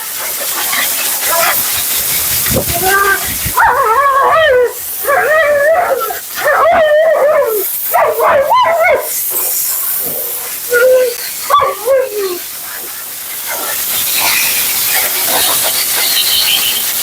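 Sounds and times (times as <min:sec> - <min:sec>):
dog howl-like calls: 0:02.6 - 0:09.2, 0:10.0 - 0:12.5.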